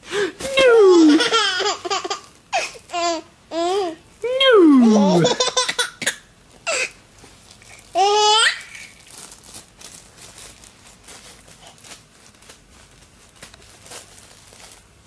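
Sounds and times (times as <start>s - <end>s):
baby laughing squeal: 4.9s - 6.1s
faint rustling: 7.1s - 15.0s.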